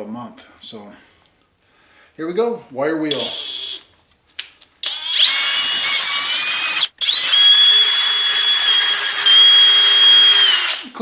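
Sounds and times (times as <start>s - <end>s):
drill wire brush scrubbing metal: 4.8s - 11.0s.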